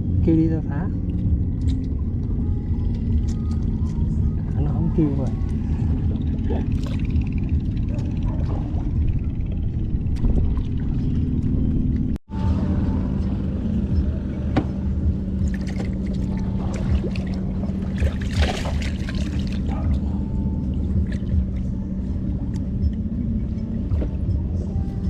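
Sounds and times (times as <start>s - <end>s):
small engine humming: 1.0s - 25.0s
water splashing: 5.3s - 11.8s, 15.3s - 21.8s.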